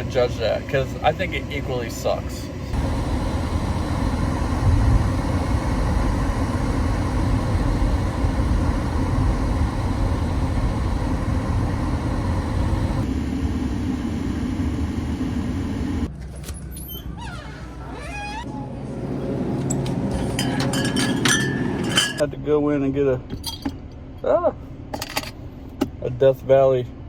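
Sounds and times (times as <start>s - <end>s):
air conditioning blowing: 0.0s - 16.2s, 17.5s - 27.0s
car engine running: 2.7s - 16.2s.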